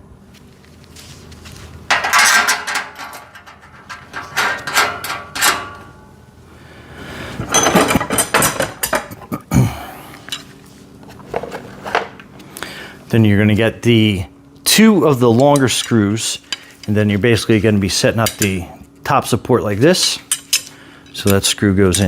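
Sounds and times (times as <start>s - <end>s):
metal parts clinking and rattling: 1.9s - 5.9s, 7.5s - 9.1s, 20.2s - 22.0s.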